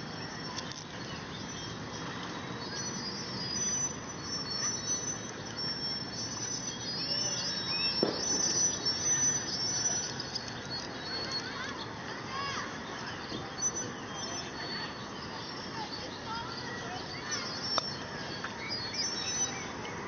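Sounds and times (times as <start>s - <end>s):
crickets chirping: 0.0s - 11.5s.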